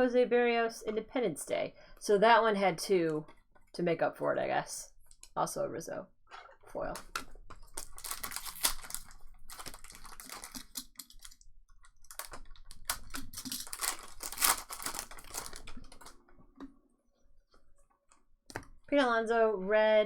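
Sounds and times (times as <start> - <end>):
wrappers crinkling: 7.0 - 16.2.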